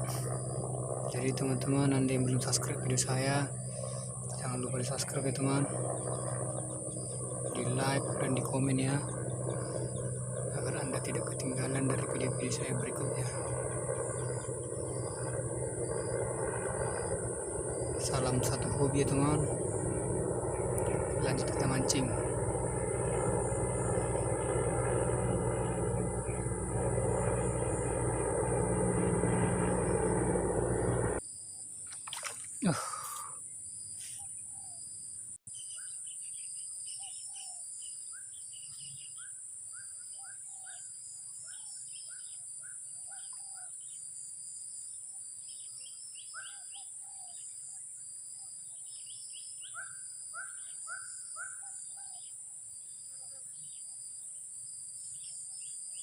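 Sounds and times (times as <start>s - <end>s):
aircraft engine overhead: 0.0s - 31.2s, 48.8s - 52.9s
birds chirping: 0.0s - 31.2s, 48.8s - 52.4s
high insect buzz: 0.0s - 34.2s.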